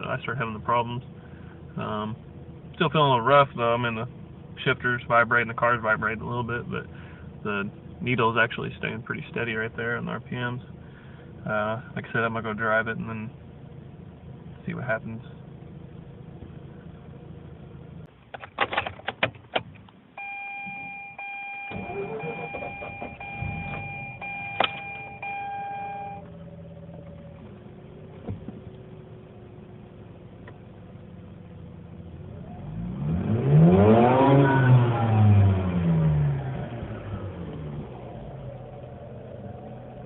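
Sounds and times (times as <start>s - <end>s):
electronic warning chime: 20.2s - 26.2s
rotary engine idling and revving: 26.5s - 40.0s.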